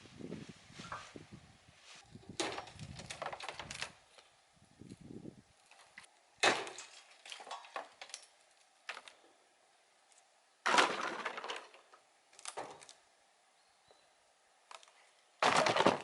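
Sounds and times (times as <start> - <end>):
knocks and scrapes: 0.3 - 4.0.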